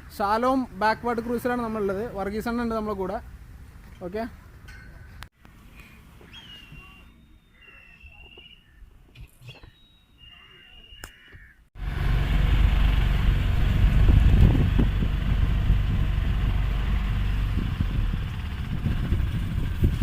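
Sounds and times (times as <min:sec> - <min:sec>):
motorboat engine running: 0:11.8 - 0:20.0.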